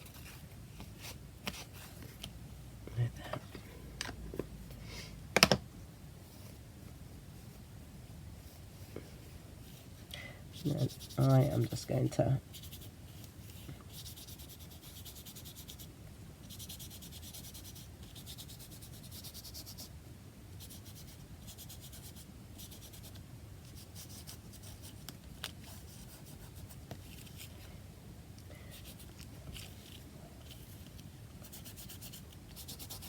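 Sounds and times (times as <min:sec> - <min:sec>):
paint scrubbing on card: 0:10.6 - 0:11.6, 0:12.5 - 0:12.9, 0:13.9 - 0:19.9, 0:31.4 - 0:33.0.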